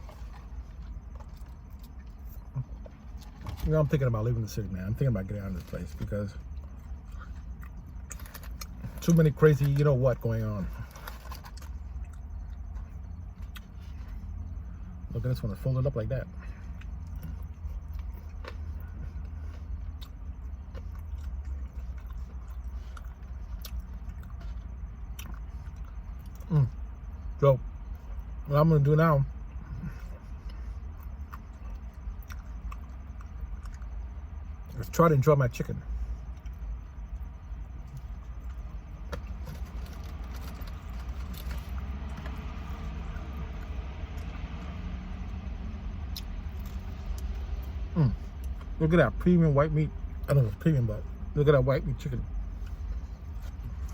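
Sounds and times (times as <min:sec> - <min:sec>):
chewing crispy fried chicken: 0:00.0 - 0:15.7, 0:16.3 - 0:48.8
low engine-like rumble: 0:00.0 - 0:53.9.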